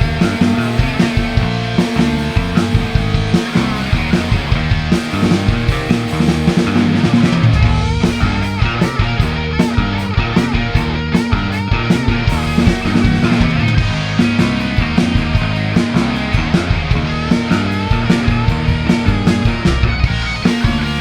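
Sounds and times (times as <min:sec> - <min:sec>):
rock band playing: 0:00.0 - 0:21.0.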